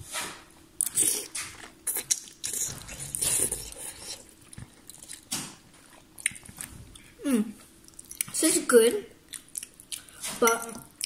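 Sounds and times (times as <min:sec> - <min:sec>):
person chewing noodles: 0:00.8 - 0:07.2, 0:07.8 - 0:08.4, 0:09.2 - 0:11.0.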